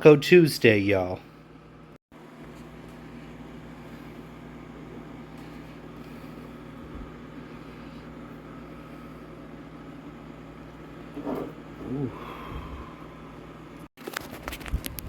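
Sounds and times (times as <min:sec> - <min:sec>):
low hum: 0:02.9 - 0:13.9.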